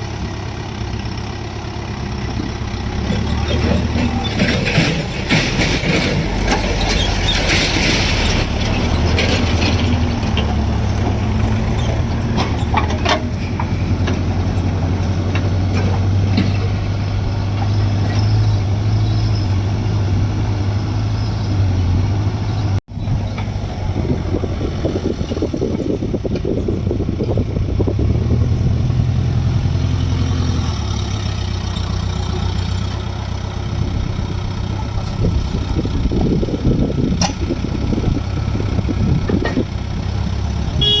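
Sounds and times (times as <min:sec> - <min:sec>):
diesel engine running: 0:00.0 - 0:41.0
hissing and clattering: 0:03.0 - 0:10.6.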